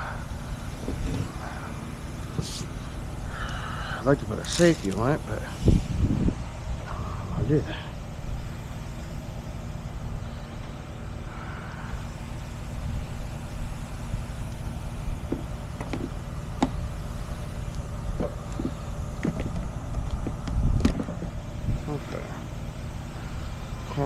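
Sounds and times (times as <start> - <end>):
truck engine idling: 0.0 - 24.0
sharp clicks and knocks: 15.3 - 16.8, 18.2 - 21.4.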